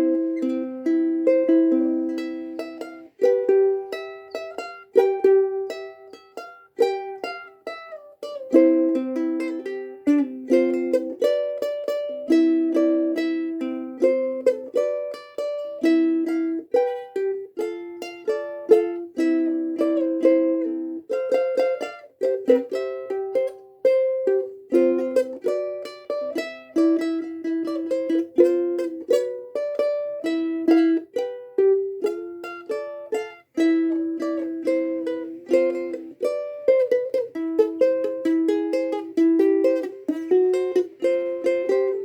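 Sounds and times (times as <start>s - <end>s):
ukulele fingerpicking: 0.0s - 42.0s.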